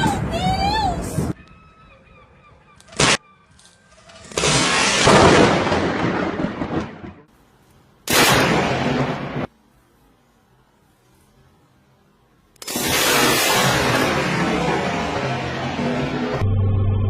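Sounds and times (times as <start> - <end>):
loud thunderclaps: 4.4 - 7.3.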